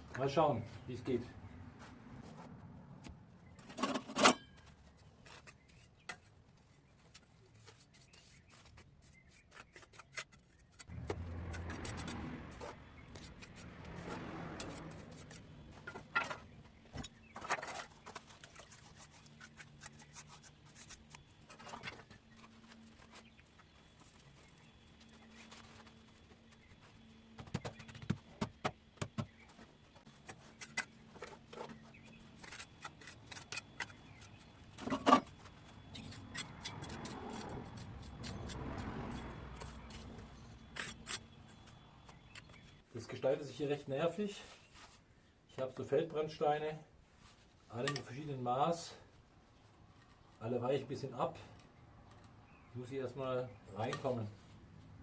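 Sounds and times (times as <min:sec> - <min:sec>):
trowel scraping mortar: 0:17.4 - 0:22.6, 0:30.2 - 0:41.7.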